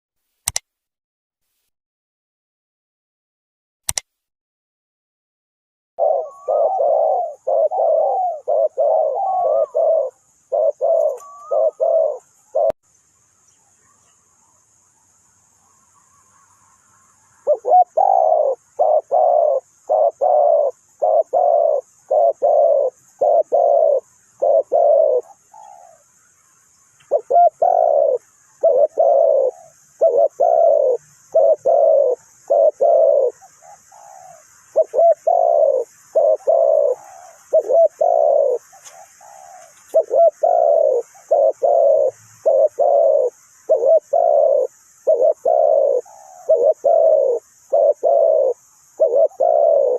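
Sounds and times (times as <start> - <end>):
dove cooing: 6.0 - 12.8, 17.4 - 26.1, 27.0 - 49.9.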